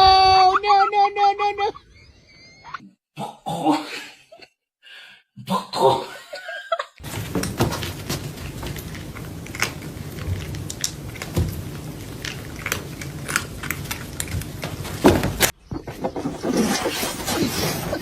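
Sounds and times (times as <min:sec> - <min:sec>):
chewing and crunching: 0:07.7 - 0:15.6.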